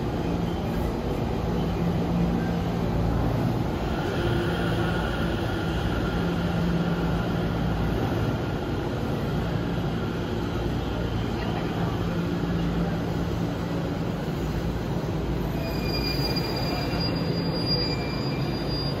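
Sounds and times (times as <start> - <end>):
electric train running rumble: 0.0 - 19.0
high-pitched wheel squeal: 15.4 - 19.0.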